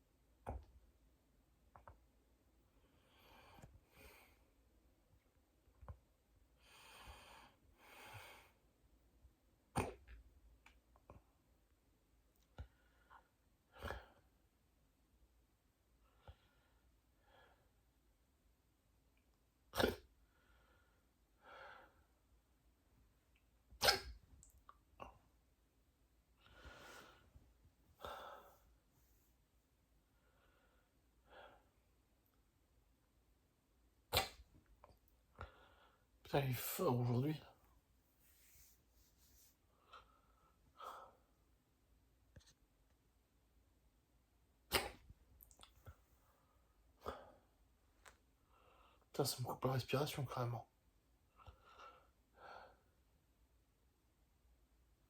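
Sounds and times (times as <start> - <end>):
person breathing softly: 2.7 - 4.6, 6.6 - 8.6, 20.2 - 22.2, 26.4 - 27.4, 28.0 - 29.2, 30.1 - 31.7, 35.3 - 36.1, 48.4 - 49.1
person hiccupping: 23.8 - 24.2, 44.7 - 45.0
slow breaths: 26.4 - 27.4.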